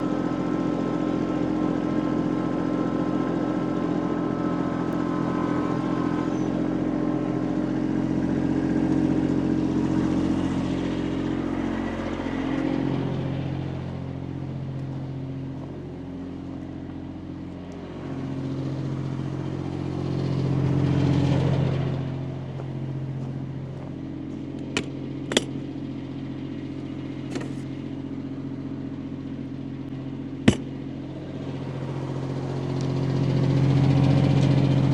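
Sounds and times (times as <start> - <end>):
engine running: 0.0 - 34.9
sharp knocks: 24.8 - 25.6, 30.5 - 30.7.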